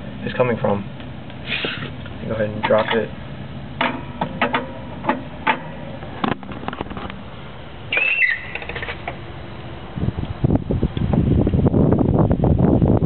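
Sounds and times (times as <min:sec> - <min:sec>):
suspension clicks and knocks: 0:02.6 - 0:03.1, 0:03.8 - 0:07.2
high squeak: 0:07.9 - 0:08.8.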